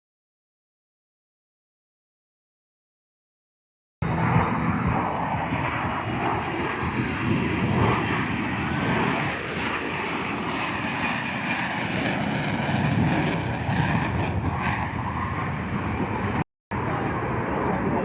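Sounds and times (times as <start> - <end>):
jet engine roaring: 4.0 - 18.0.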